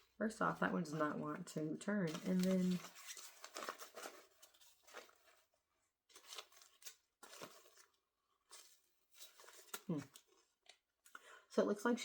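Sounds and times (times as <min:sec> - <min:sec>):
doll being handled rustling: 0:02.0 - 0:10.9.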